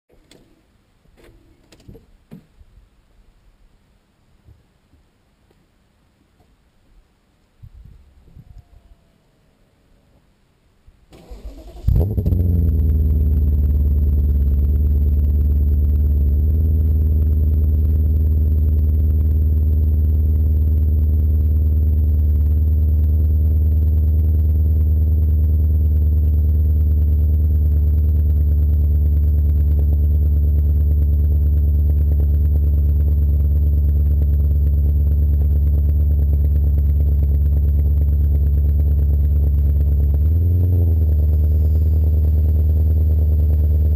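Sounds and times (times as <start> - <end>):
car engine starting and idling: 11.1 - 43.9.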